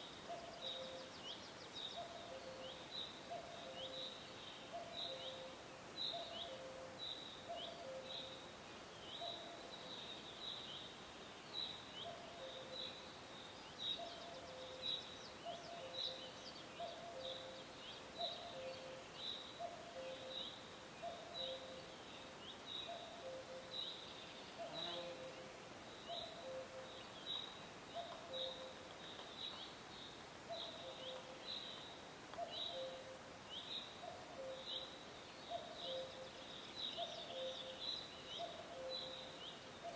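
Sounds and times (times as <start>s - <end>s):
forest background hiss: 0.0s - 39.9s
cuckoo calling: 18.2s - 19.0s, 26.1s - 28.9s, 30.5s - 31.4s, 32.3s - 33.2s, 34.0s - 34.8s, 35.5s - 36.4s, 37.0s - 37.8s, 38.4s - 39.9s.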